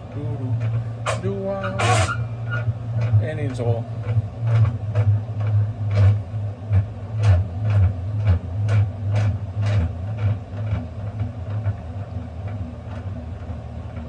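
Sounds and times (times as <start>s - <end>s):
steady low hum: 0.0s - 14.0s
squeaking saw mechanism: 1.1s - 2.7s.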